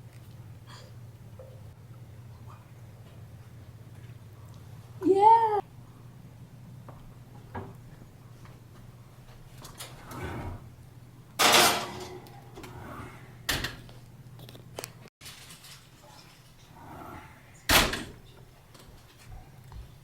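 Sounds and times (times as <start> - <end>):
kitchen knocks and clatters: 11.4 - 12.8, 13.5 - 14.0, 17.6 - 19.4.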